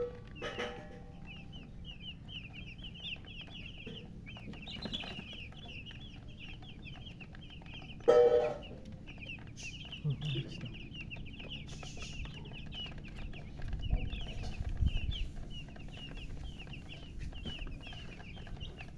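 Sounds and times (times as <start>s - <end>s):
chicks peeping: 0.0s - 18.9s
lower bird call: 7.8s - 10.2s.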